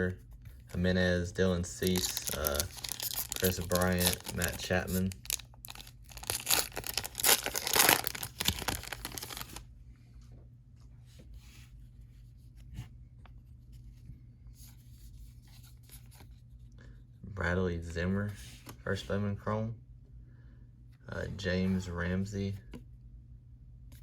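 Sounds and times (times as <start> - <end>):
cards rustling: 0.5 - 9.6
wrapper tearing and crinkling: 1.8 - 9.6.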